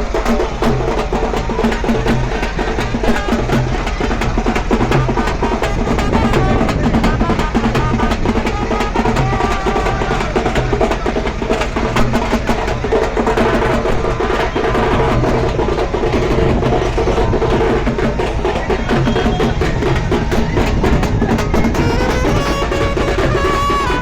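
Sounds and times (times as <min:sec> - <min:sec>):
fast dense drumming: 0:00.0 - 0:24.0
held melodic tones: 0:00.0 - 0:24.0.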